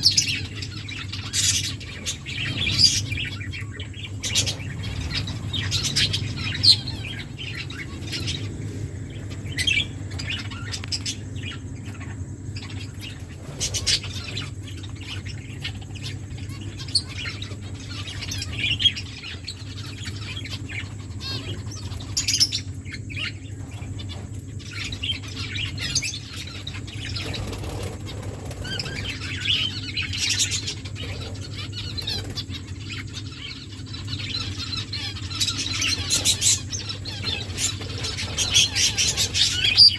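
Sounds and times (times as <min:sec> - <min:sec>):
finches chirping and calling: 0:00.0 - 0:39.9
steady low hum: 0:00.0 - 0:39.9
wings flapping: 0:27.2 - 0:29.3, 0:36.1 - 0:39.9.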